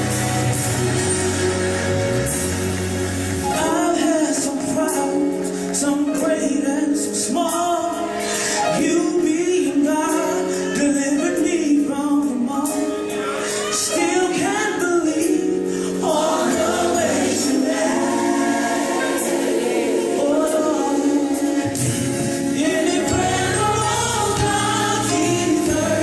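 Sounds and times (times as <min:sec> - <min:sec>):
bass line: 0:00.0 - 0:04.8, 0:21.6 - 0:26.0
choir singing over a band: 0:15.8 - 0:26.0.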